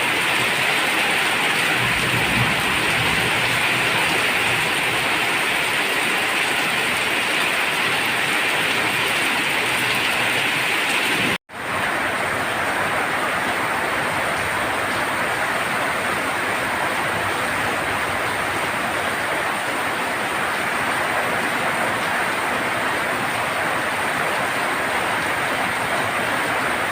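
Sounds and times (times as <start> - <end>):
heavy rain on a tin roof: 0.0 - 26.9.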